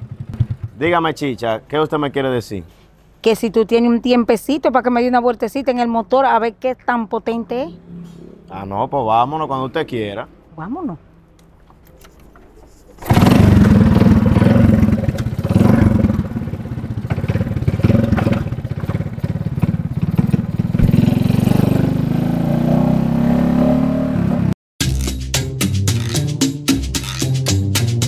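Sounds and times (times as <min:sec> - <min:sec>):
motorcycle engine revving: 0:00.0 - 0:00.8, 0:13.0 - 0:24.6.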